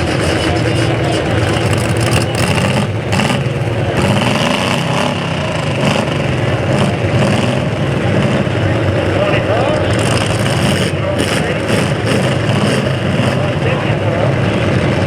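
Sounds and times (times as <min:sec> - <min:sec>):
car engines running and revving: 0:00.0 - 0:15.0.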